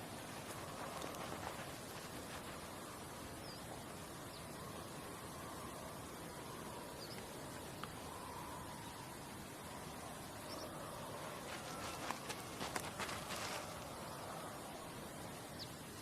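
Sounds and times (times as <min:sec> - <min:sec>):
faint insect drone: 0:00.0 - 0:16.0
steady hiss: 0:00.0 - 0:16.0
faint bird chirps: 0:03.4 - 0:15.9.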